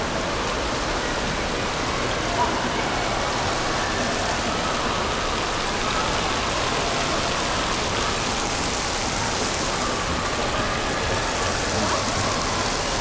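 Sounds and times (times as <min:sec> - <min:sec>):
water falling and splashing: 0:03.6 - 0:13.0.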